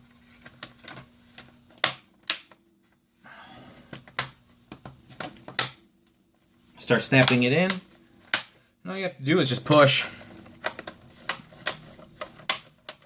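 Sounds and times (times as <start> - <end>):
plastic scraping on plastic: 10.1 - 13.0.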